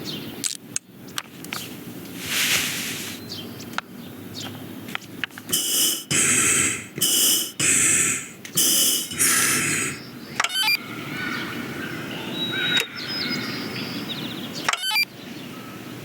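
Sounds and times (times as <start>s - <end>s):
hissing bursts with whistle tone: 5.5s - 10.0s.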